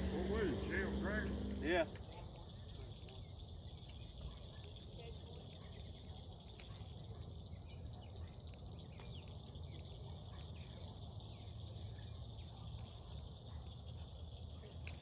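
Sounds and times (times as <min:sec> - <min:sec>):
low rumble: 0:00.0 - 0:02.1.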